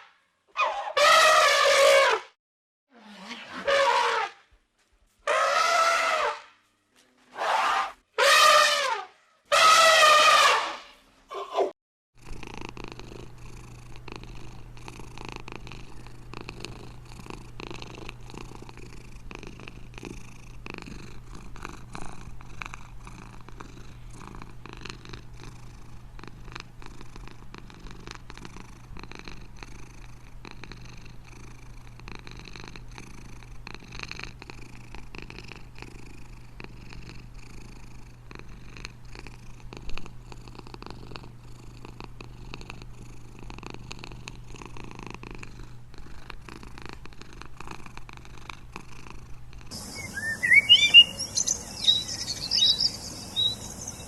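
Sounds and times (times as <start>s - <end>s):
cat purring: 12.2s - 54.0s.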